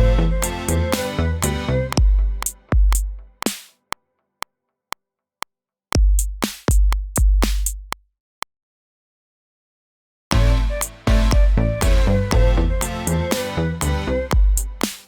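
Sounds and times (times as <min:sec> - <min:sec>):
deep electronic kick drums: 0:00.0 - 0:00.5, 0:02.0 - 0:03.3, 0:06.0 - 0:08.0, 0:10.3 - 0:12.9, 0:14.3 - 0:14.8.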